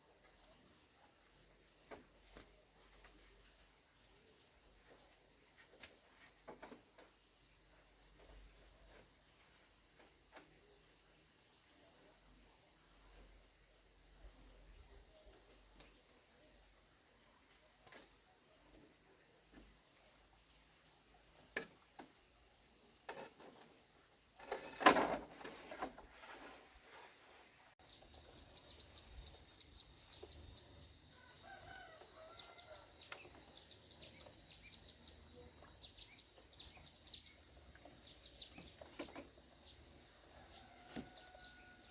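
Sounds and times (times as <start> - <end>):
small birds chirping: 27.8 - 41.9.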